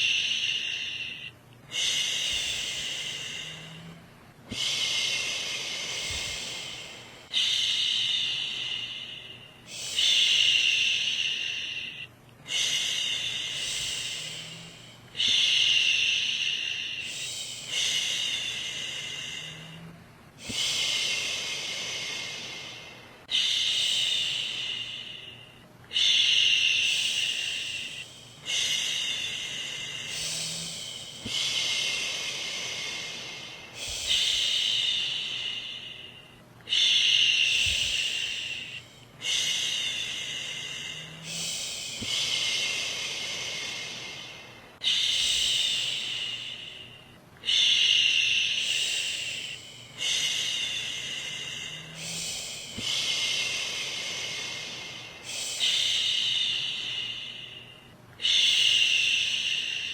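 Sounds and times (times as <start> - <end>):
woman shushing: 30.1 - 31.6, 41.2 - 42.8, 51.5 - 53.5.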